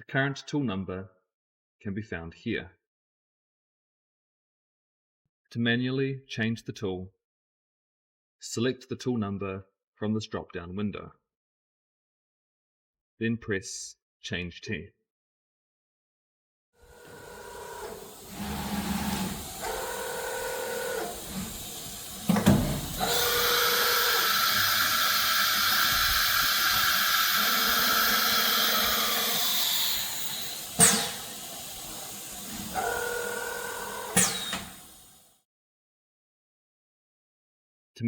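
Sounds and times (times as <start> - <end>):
router axis motors whining: 16.8 - 35.2
machine clunk: 17.8 - 23.9, 27.9 - 34.9
compressed air hiss: 17.9 - 19.8, 20.5 - 32.8.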